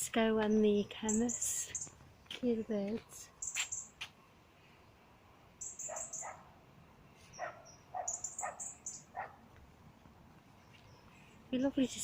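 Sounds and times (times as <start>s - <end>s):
bird high chirps: 0.5s - 2.0s, 3.4s - 4.0s, 5.6s - 6.4s, 7.2s - 9.3s
dog yapping: 5.8s - 6.5s, 7.4s - 9.4s.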